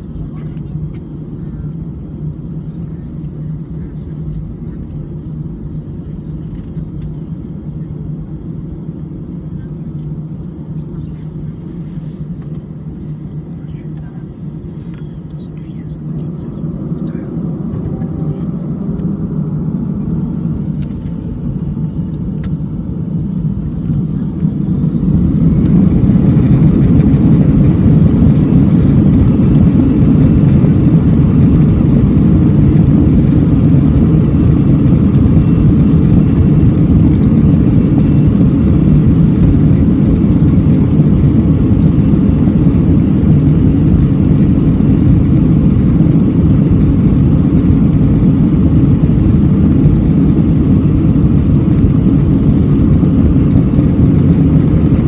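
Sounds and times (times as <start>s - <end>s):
jet engines roaring: 0.0s - 55.0s.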